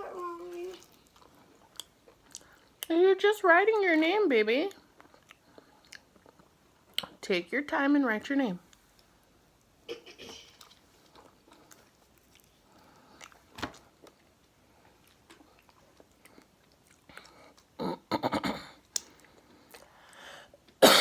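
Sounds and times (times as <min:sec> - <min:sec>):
wet chewing noises: 0:00.4 - 0:03.0, 0:04.7 - 0:07.2, 0:10.5 - 0:17.8
small mouth clicks: 0:18.9 - 0:19.9.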